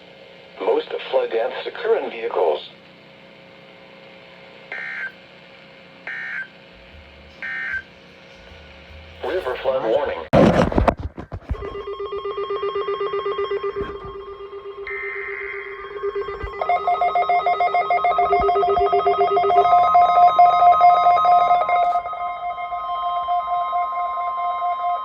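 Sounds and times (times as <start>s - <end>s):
pulsing electronic alarm beeps: 4.7s - 5.2s, 6.1s - 6.6s, 7.4s - 7.9s, 11.7s - 25.0s.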